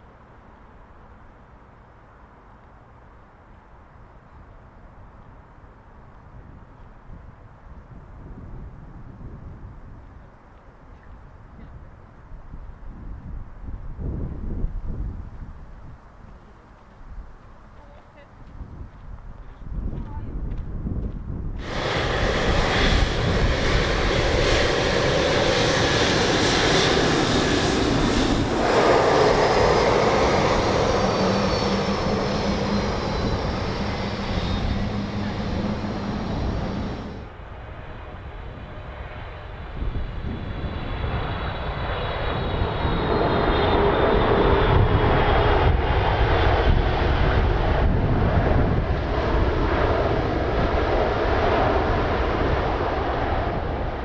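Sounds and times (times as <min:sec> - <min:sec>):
jet engines whining: 0:21.6 - 0:54.0.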